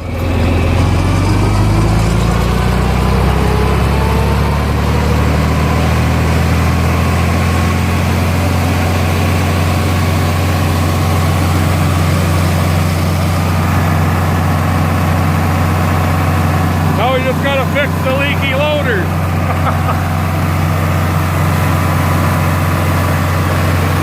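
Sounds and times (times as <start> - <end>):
tractor engine running under load: 0.0 - 24.0.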